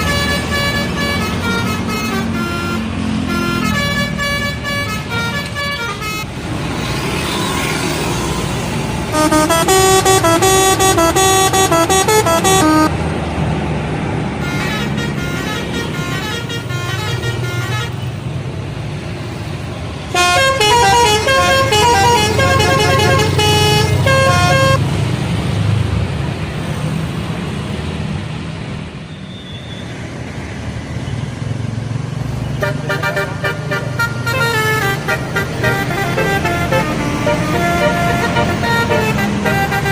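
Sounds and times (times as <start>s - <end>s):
musical bus horn: 0.0s - 6.3s, 9.1s - 13.0s, 14.4s - 18.2s, 20.1s - 24.8s, 32.6s - 39.9s
bus engine low rumble: 0.0s - 7.0s, 8.0s - 29.2s, 30.0s - 39.9s.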